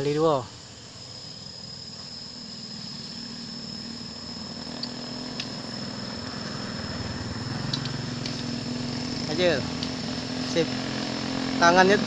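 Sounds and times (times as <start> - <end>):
high insect trill: 0.0 - 12.0
engine idling: 2.1 - 12.0
faint clicks: 7.7 - 8.4.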